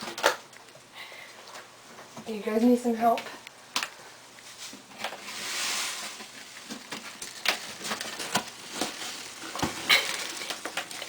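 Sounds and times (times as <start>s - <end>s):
scraping rustle: 4.5s - 11.0s.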